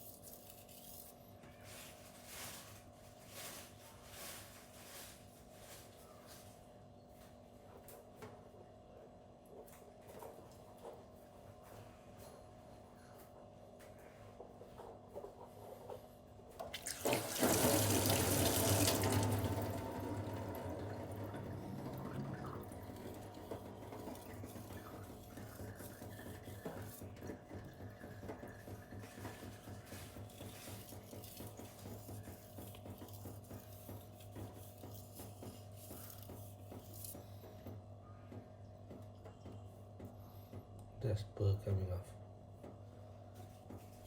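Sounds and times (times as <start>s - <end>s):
knife scraping on whetstone: 23.5s - 27.1s, 29.6s - 37.2s.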